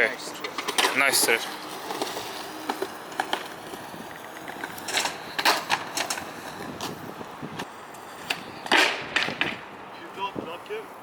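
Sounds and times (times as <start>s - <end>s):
skateboard rolling on pavement: 0.0s - 11.0s
skateboard clacks and knocks: 8.3s - 9.6s.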